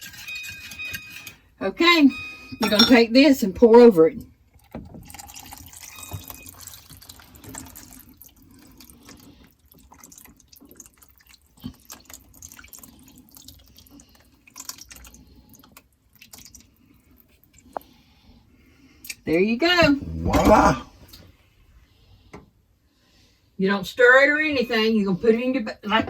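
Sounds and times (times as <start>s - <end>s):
liquid pouring and dripping: 4.5s - 17.9s.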